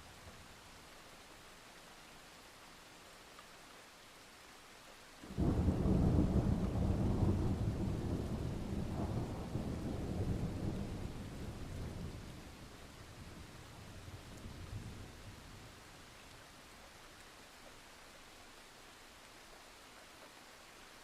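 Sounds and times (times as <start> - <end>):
rain hiss: 0.0 - 21.0
thunder clap and rumble: 5.3 - 15.2.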